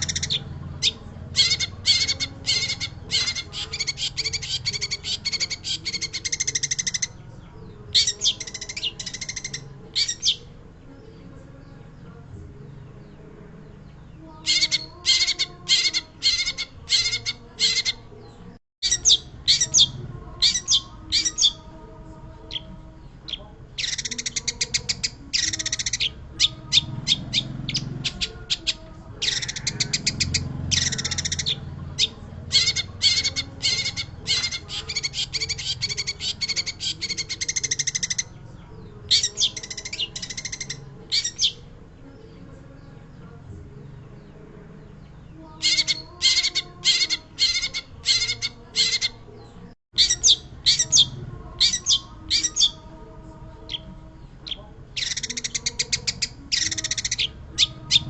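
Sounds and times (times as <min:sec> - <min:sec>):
bird chattering and trilling: 0:00.0 - 0:11.2, 0:13.0 - 0:21.8, 0:22.4 - 0:42.4, 0:44.2 - 0:58.0.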